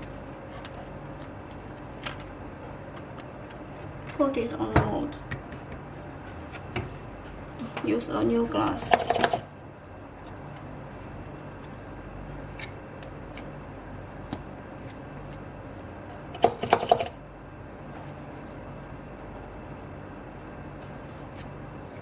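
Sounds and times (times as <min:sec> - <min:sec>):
steady low hum: 0:00.0 - 0:22.0
small hard parts clicking: 0:16.1 - 0:17.2.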